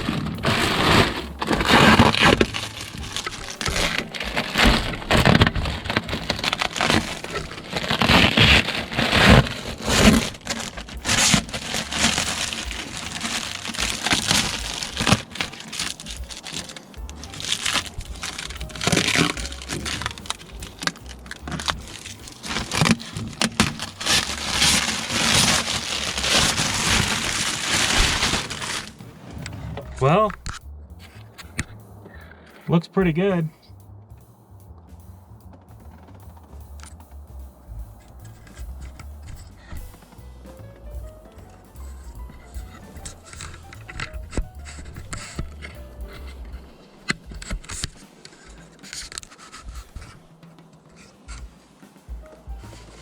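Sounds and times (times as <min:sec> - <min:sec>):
plastic film peeling off: 0:00.0 - 0:30.6, 0:42.3 - 0:46.4, 0:47.0 - 0:50.3.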